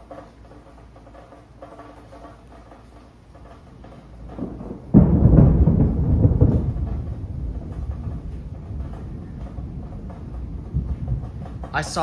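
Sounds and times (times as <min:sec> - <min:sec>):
deep thunder rumble: 0:03.6 - 0:12.0
thunder clap: 0:03.6 - 0:12.0.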